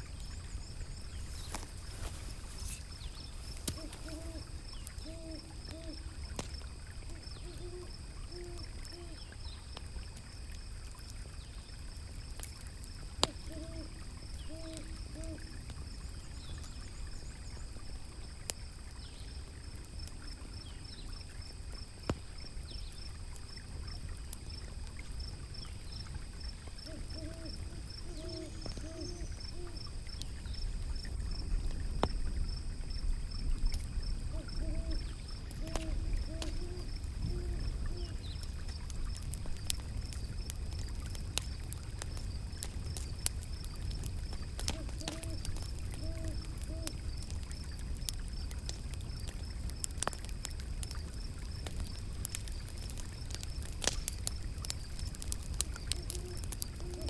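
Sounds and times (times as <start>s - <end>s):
fire crackling and popping: 0.0s - 57.0s
owl hooting: 1.2s - 6.1s, 7.1s - 9.2s, 13.3s - 15.6s, 26.8s - 29.9s, 34.3s - 38.2s, 44.7s - 47.0s, 55.6s - 57.0s.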